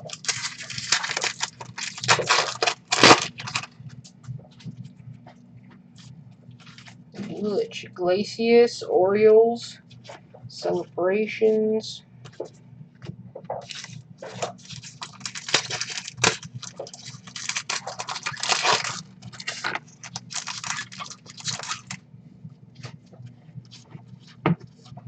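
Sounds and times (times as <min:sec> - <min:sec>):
wrappers tearing and crinkling: 0:00.0 - 0:03.7, 0:13.6 - 0:22.0.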